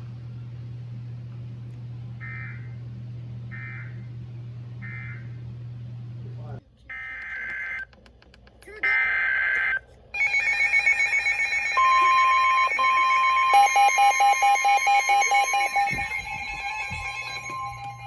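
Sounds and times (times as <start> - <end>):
steady warning tone: 2.1 - 5.7, 8.8 - 18.0
fast beeping: 8.9 - 18.0.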